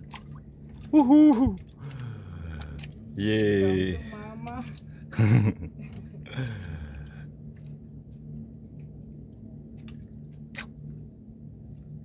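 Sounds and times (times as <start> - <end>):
faint clicks and drips: 0.0 - 12.0
steady low hum: 0.0 - 12.0
person shouting: 1.0 - 1.6.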